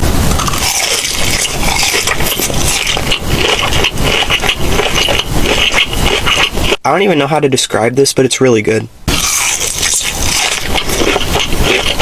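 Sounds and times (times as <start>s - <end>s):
chewing and crunching: 0.3s - 6.8s, 9.1s - 12.0s.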